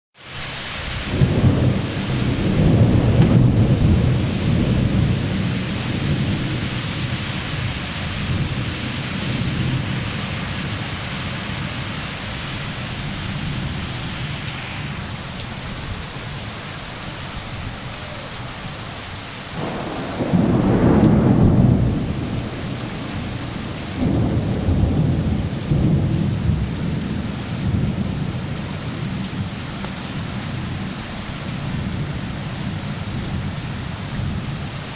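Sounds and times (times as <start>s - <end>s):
steady rain: 0.2s - 34.9s
rolling thunder: 1.0s - 14.1s, 19.6s - 29.6s.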